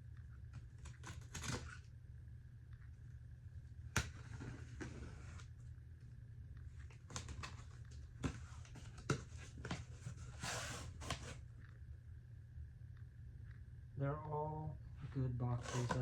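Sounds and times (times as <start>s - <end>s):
steady low hum: 0.0s - 16.0s
cardboard rustling: 6.8s - 11.5s.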